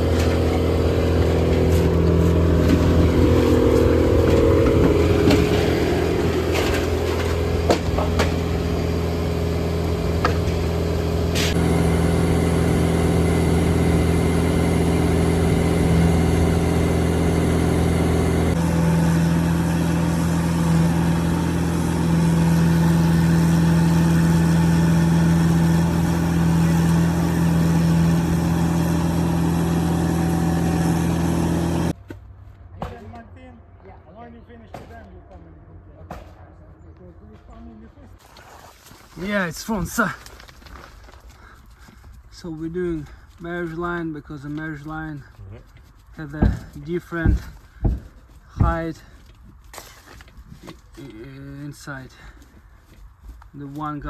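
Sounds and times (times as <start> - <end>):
engine running under load: 0.0 - 32.0, 45.9 - 49.2.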